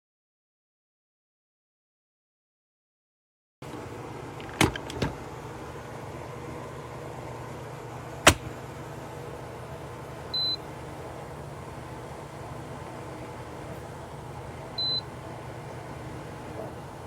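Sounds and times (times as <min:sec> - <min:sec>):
steady low hum: 0:03.6 - 0:17.0.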